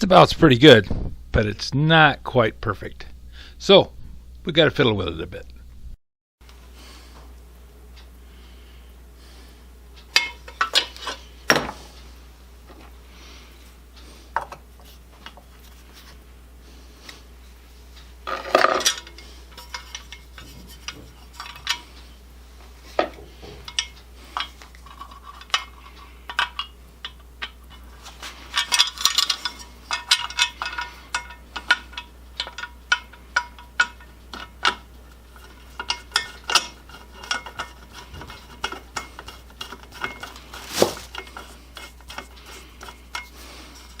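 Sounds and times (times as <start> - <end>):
steady low hum: 0.0 - 6.0.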